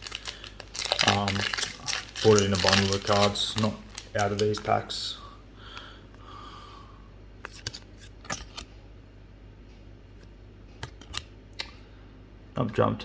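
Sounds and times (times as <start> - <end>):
trading cards clicking and snapping: 0.0 - 4.8, 7.4 - 8.7, 10.2 - 11.8
faint room hum: 0.0 - 13.0.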